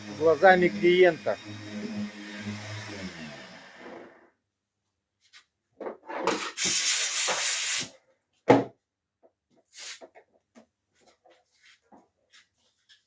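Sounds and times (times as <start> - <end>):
spray hissing: 6.6 - 7.9.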